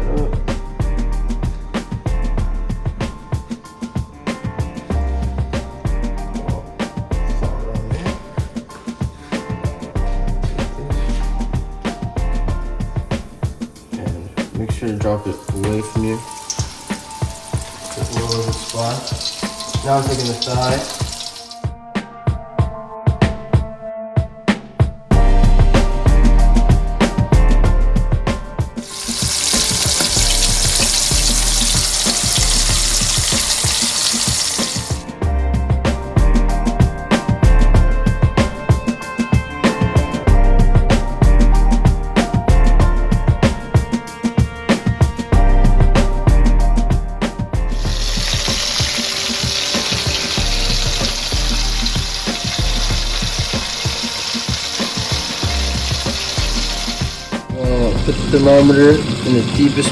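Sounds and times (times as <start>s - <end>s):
background music with a beat: 0.0s - 59.9s
chicken sizzling in hot oil: 15.0s - 21.6s, 28.8s - 35.0s, 47.7s - 59.9s.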